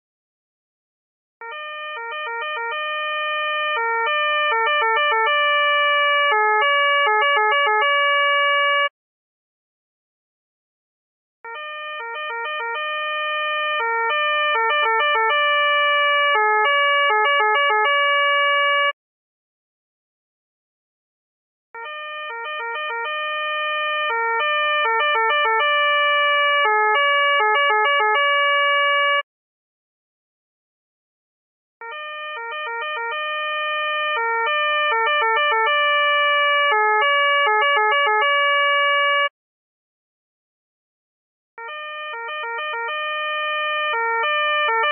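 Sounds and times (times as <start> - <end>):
police two-tone siren: 1.4 - 8.9, 11.4 - 19.0, 21.8 - 29.3, 31.8 - 39.3, 41.6 - 44.9.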